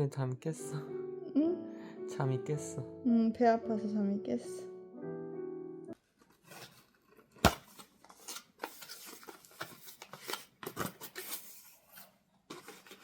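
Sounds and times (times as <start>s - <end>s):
packaging rustling: 6.2s - 13.0s.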